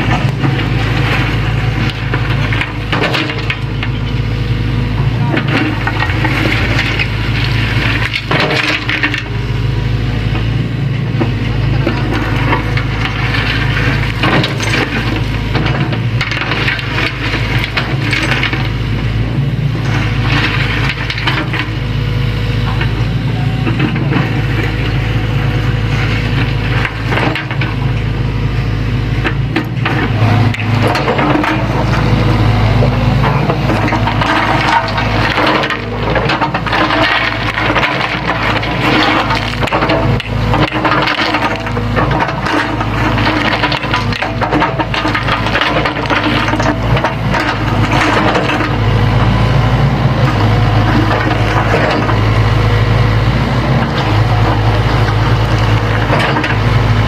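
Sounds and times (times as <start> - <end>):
excavator engine running: 0.0 - 57.0
stones cracking and grinding: 29.7 - 49.2.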